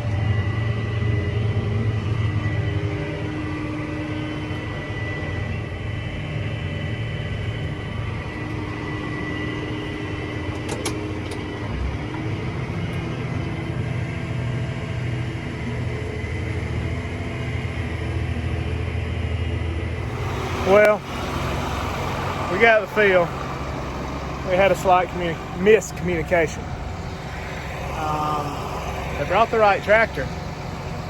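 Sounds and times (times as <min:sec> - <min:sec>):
vehicle engine running: 0:00.0 - 0:31.0.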